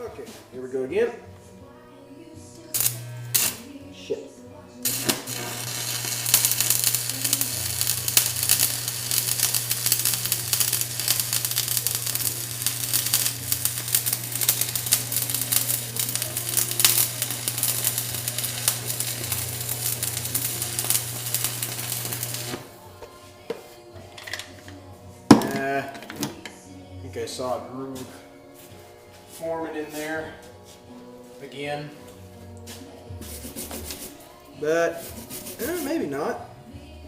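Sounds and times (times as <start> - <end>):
steady low hum: 1.2 - 23.4
welding arc crackling: 2.7 - 3.7, 4.8 - 22.8, 35.3 - 36.1.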